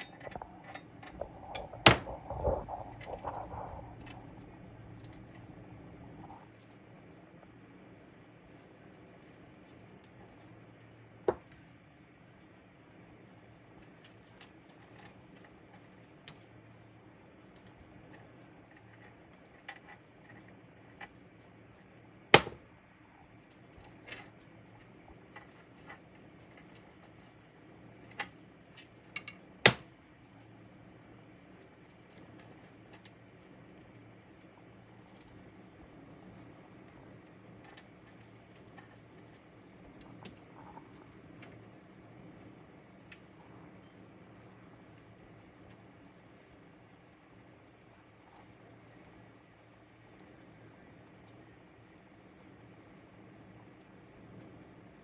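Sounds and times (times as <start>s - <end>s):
budgie pecking and scrabbling: 0.0s - 10.6s, 17.5s - 21.7s, 31.6s - 43.8s
low steady hum: 0.0s - 55.0s.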